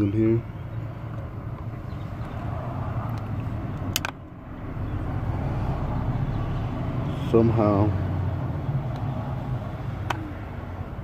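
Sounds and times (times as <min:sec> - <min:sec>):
low vehicle hum: 0:00.0 - 0:11.0
sharp click: 0:03.8 - 0:04.2.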